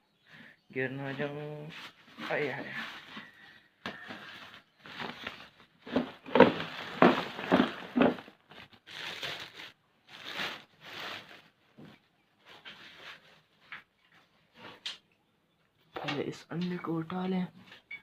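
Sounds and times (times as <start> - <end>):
rustling dry nest material: 0.9 - 13.6.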